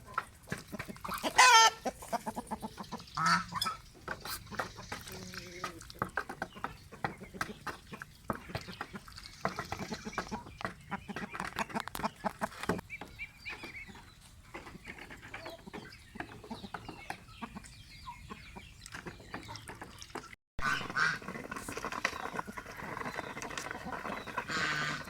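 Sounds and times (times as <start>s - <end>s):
geese and duck calling: 0.0s - 5.8s, 20.6s - 25.0s.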